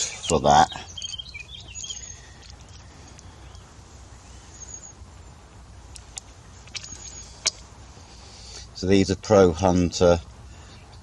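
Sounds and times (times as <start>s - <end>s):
faint bird chirps: 0.0s - 8.6s.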